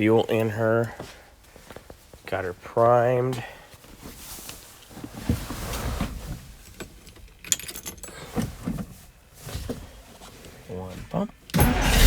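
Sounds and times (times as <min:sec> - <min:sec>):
car engine starting: 0:11.6 - 0:12.0.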